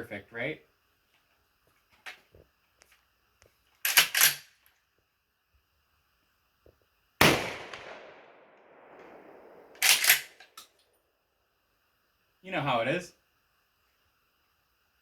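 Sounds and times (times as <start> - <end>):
shotgun racking clack: 3.8 - 4.5, 9.8 - 10.7
shotgun shot with echo: 7.2 - 10.1.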